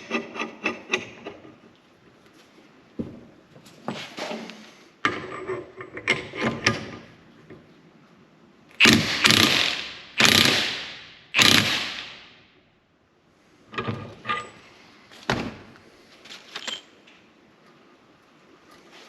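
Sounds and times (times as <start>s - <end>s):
metal parts clicking and tapping: 16.5s - 17.2s.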